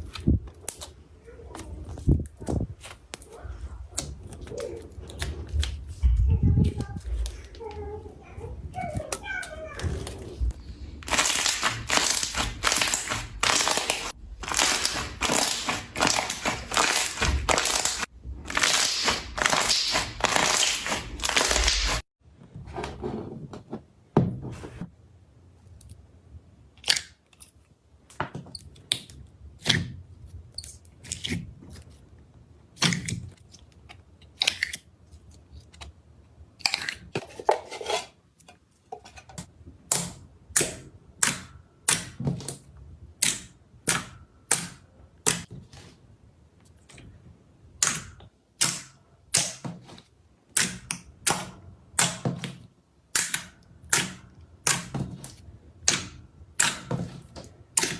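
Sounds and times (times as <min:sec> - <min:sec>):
slime squishing: 0:06.6 - 0:22.0.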